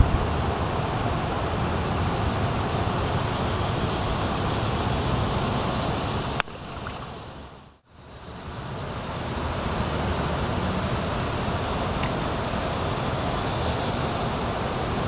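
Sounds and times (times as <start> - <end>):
wind rumble on microphone: 0.0 - 7.4
water noise: 0.0 - 15.0
wind: 0.0 - 15.0
sharp click: 6.4 - 7.1.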